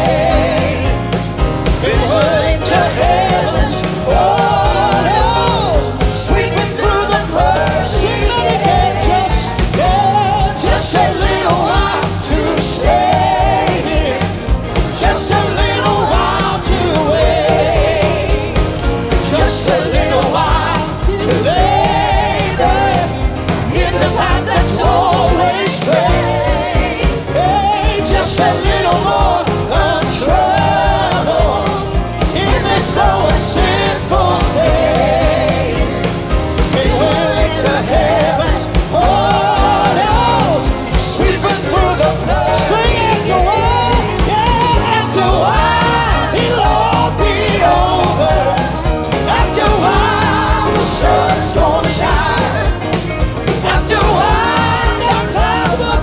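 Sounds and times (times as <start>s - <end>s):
gospel band and singers: 0.0s - 56.0s
steady drum beat: 0.0s - 56.0s.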